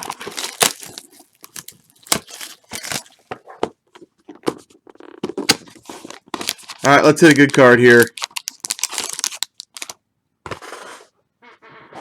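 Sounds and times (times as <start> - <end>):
plastic wrapping tearing and crinkling: 0.0 - 3.3, 4.9 - 10.0.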